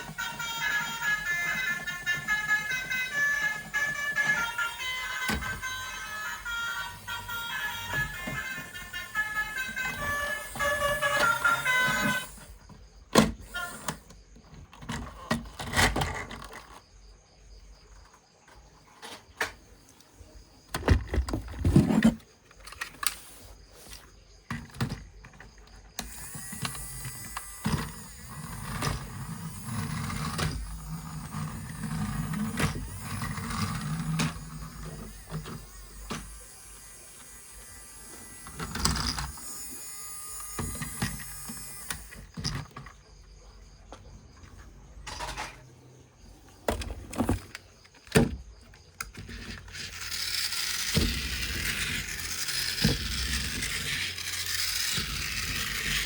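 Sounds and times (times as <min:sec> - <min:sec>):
small electric motor running: 0:00.0 - 0:12.7, 0:13.3 - 0:14.2, 0:25.9 - 0:43.0, 0:49.1 - 0:56.0
plastic toy clicks and knocks: 0:46.7 - 0:56.0.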